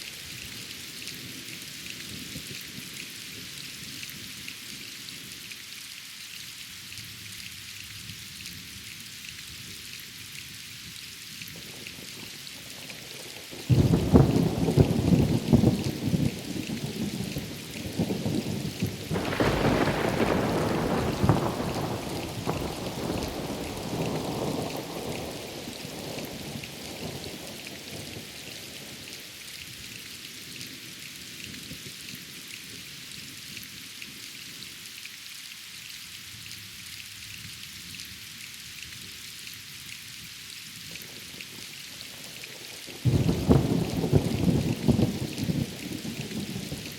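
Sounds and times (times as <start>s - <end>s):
steady rain falling: 0.0s - 46.9s
thunder: 18.1s - 24.9s, 43.1s - 45.9s.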